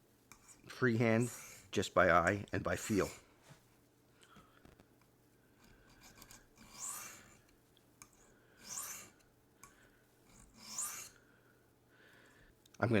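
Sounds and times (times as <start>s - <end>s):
light rubbing on stone: 0.3s - 1.9s, 2.6s - 3.2s, 5.9s - 7.5s, 8.1s - 9.2s, 10.3s - 11.2s
knife swishing on sharpening stone: 1.2s - 1.7s, 6.2s - 7.4s, 8.6s - 9.2s, 10.4s - 11.2s.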